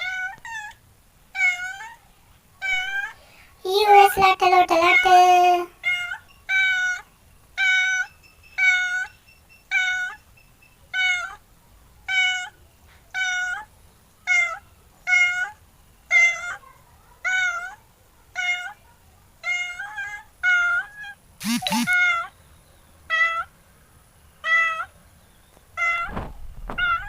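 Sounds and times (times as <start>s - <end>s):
cat meowing: 0.0s - 2.0s, 2.6s - 3.2s, 9.7s - 10.2s, 10.9s - 11.4s, 17.3s - 18.8s, 26.8s - 27.0s.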